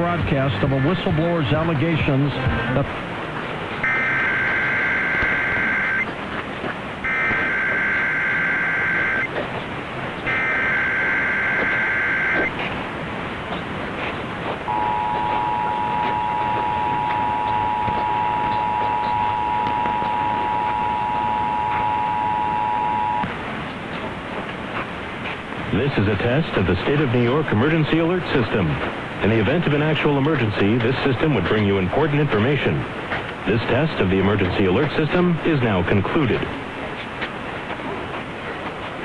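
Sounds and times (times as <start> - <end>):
radio static hiss: 0.0 - 39.0
screeching digital header data: 3.8 - 6.1, 7.0 - 9.4, 10.2 - 12.6, 14.7 - 23.3
two-tone attention signal: 3.8 - 6.2, 7.0 - 9.4, 10.2 - 12.6, 14.7 - 23.3.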